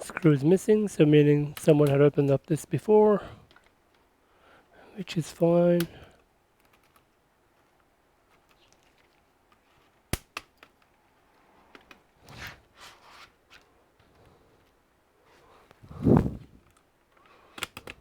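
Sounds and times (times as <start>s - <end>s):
faint handling noises: 5.1s - 18.0s.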